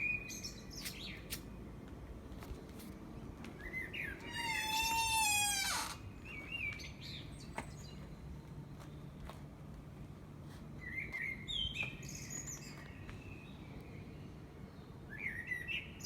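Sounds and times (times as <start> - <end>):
bird singing: 0.0 - 1.3, 3.6 - 9.2, 10.8 - 16.0.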